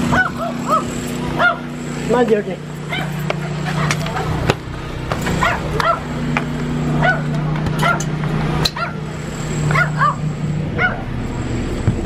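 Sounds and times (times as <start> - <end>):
steady low hum: 0.0 - 12.0
dog yipping and whining: 0.1 - 1.7, 2.9 - 4.4, 7.0 - 8.1, 8.8 - 9.0, 9.7 - 11.1.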